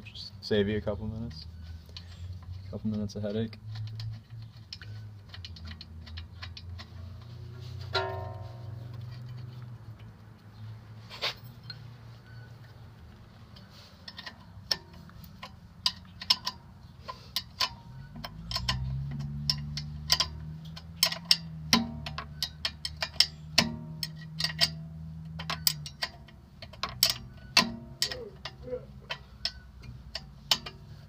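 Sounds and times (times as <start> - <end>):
low steady hum: 0.0 - 10.7
metal hand tools clinking: 7.9 - 9.5, 13.5 - 31.0.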